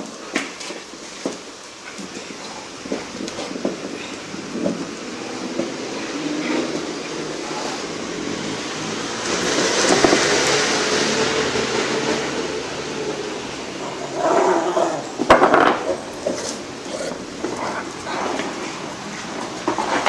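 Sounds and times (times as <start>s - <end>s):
iron ball rolling on hard floor: 14.1s - 20.0s.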